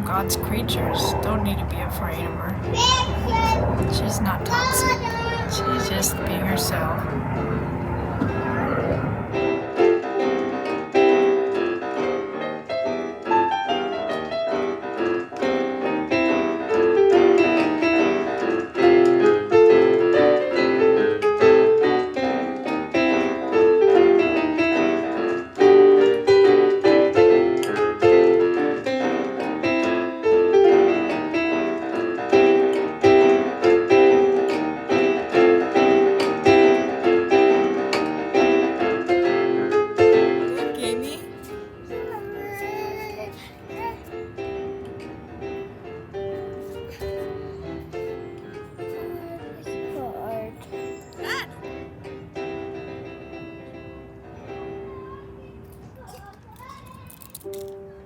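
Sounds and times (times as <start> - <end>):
piano music: 0.0 - 56.1.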